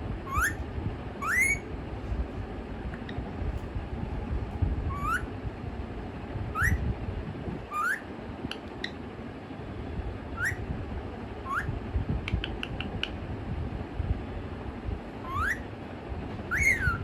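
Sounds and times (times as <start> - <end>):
parrot whistling rising pitch: 0.3 - 0.6, 1.2 - 1.7, 4.9 - 5.3, 6.5 - 6.8, 7.7 - 8.0, 10.4 - 10.6, 11.5 - 11.7, 15.2 - 15.6, 16.5 - 17.0.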